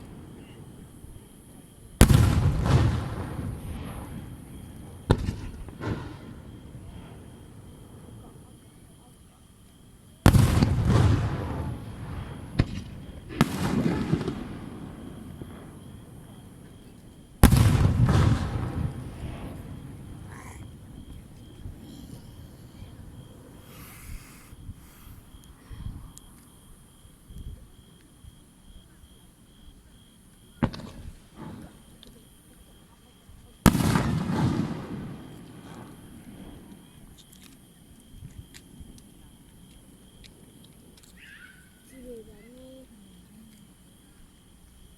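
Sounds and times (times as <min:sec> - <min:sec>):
firework crack: 0:00.0 - 0:08.8, 0:10.2 - 0:26.6, 0:30.6 - 0:32.3, 0:33.6 - 0:41.1
firework booms with rumble: 0:02.0 - 0:08.8, 0:10.2 - 0:25.4, 0:30.6 - 0:32.0, 0:33.6 - 0:37.1.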